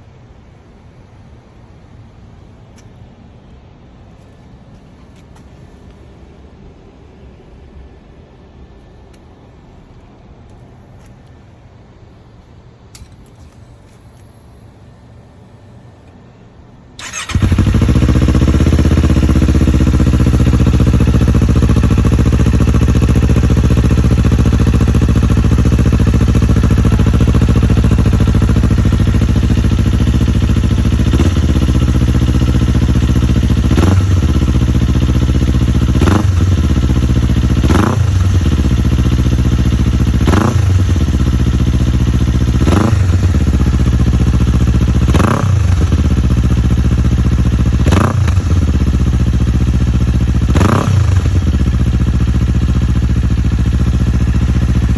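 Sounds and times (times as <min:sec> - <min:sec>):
motorcycle engine idling: 0:17.0 - 0:54.9
motorcycle engine revving: 0:17.0 - 0:54.9.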